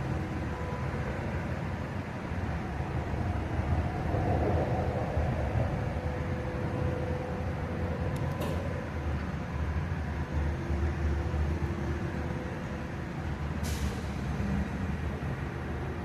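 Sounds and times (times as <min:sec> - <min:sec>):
heavy diesel equipment running: 0:05.2 - 0:16.0
air hiss: 0:13.6 - 0:14.2.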